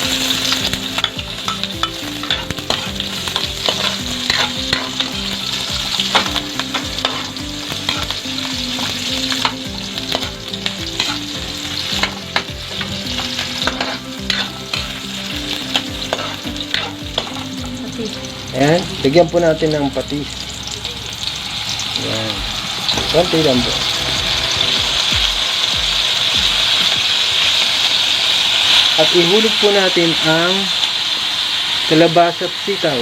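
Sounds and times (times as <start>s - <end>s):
garlic sizzling in oil: 0.0s - 33.0s
spatula scraping a pan: 1.0s - 15.0s, 15.7s - 17.6s.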